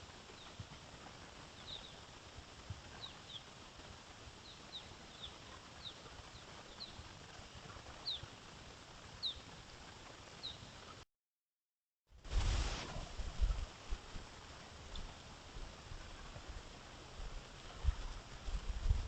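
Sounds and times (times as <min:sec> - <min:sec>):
steady hiss: 0:00.0 - 0:11.0, 0:12.2 - 0:19.0
small bird chirping: 0:01.6 - 0:02.0, 0:02.9 - 0:03.5, 0:04.4 - 0:07.0, 0:08.0 - 0:08.3, 0:09.2 - 0:09.5, 0:10.4 - 0:10.7.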